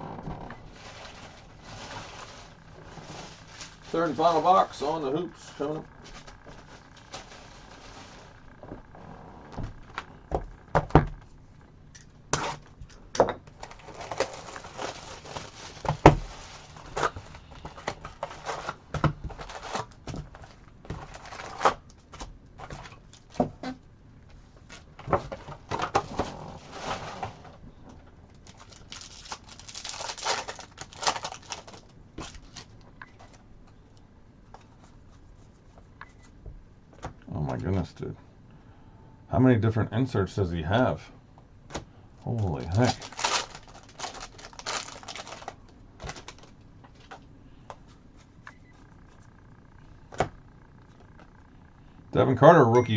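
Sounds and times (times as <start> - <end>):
wrapper crinkling and tearing: 5.6 - 8.4, 13.6 - 18.8, 19.4 - 21.9, 28.3 - 33.4, 42.3 - 47.2.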